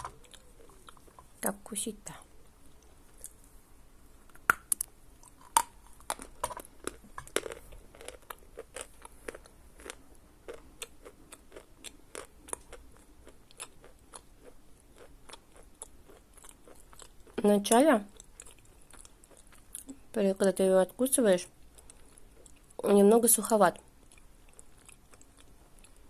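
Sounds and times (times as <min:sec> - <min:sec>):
crunching while chewing chalk: 0:00.0 - 0:01.3, 0:04.3 - 0:17.4, 0:18.1 - 0:20.0, 0:21.6 - 0:22.8, 0:23.8 - 0:26.0.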